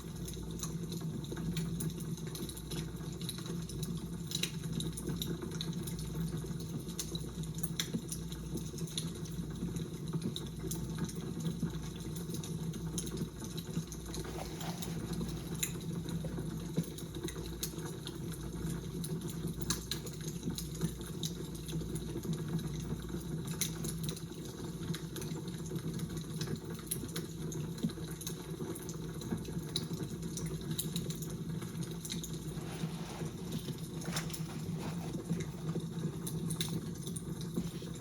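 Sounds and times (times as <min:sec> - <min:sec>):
fire crackling: 0:30.2 - 0:38.0.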